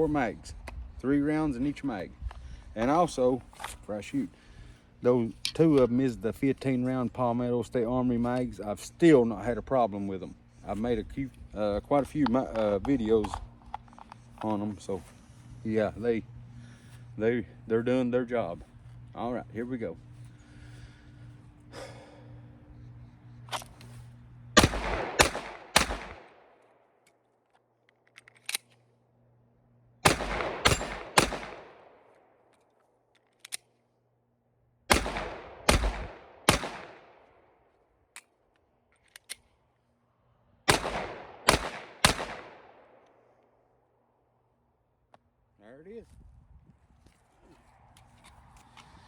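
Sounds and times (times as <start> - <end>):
pistol shots echoing: 24.6 - 26.4, 30.0 - 32.0, 34.9 - 37.2, 40.7 - 43.0
magazine change clicks: 27.8 - 28.9, 30.1 - 33.8, 34.9 - 37.3, 38.1 - 39.6, 40.7 - 43.5.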